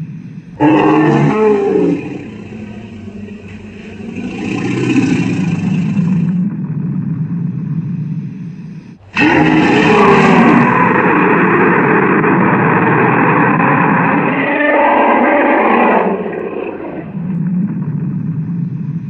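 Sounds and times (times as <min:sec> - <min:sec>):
monster roar: 0:00.6 - 0:06.4, 0:09.1 - 0:17.2.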